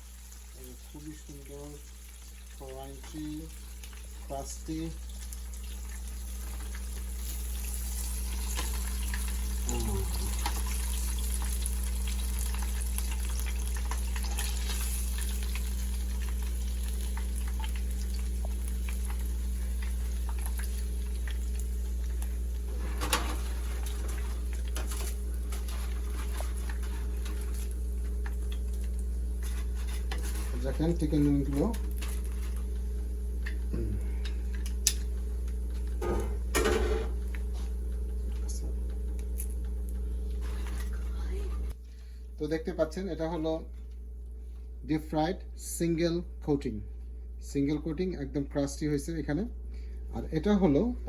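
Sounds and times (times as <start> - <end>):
food sizzling in hot oil: 0.0 - 33.4.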